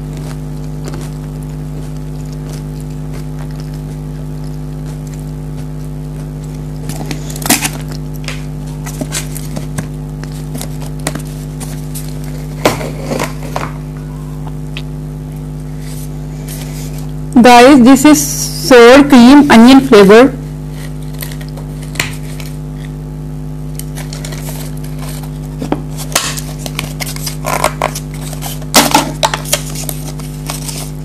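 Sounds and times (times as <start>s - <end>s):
crisps being crunched: 0.0s - 12.6s
low steady hum: 0.0s - 31.0s.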